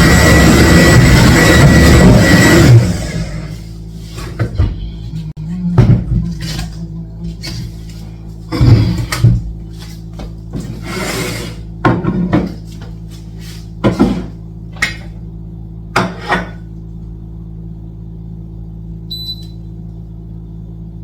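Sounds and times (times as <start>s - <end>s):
steady low hum: 0.0s - 21.0s
appliance electronic beep: 19.1s - 19.7s.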